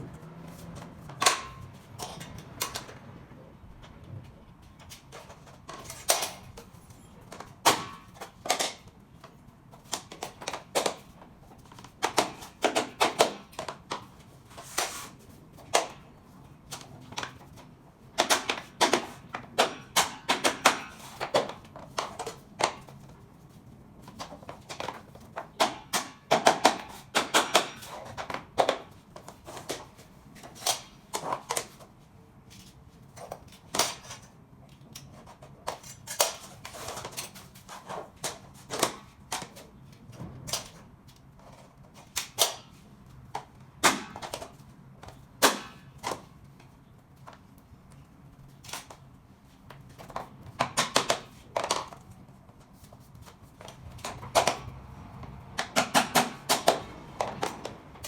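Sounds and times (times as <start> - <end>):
floor planks clicking and knocking: 3.8 - 23.3, 24.0 - 31.9, 48.5 - 58.0.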